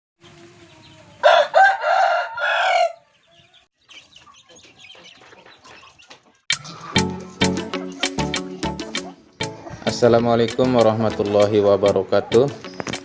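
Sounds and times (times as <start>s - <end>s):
rooster crowing: 1.2s - 3.1s
music: 6.5s - 13.0s.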